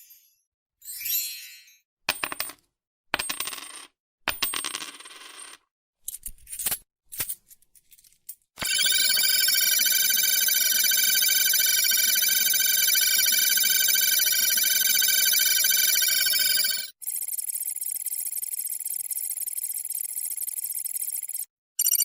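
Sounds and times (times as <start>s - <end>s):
warbling electronic ringing tone: 8.6s - 22.0s.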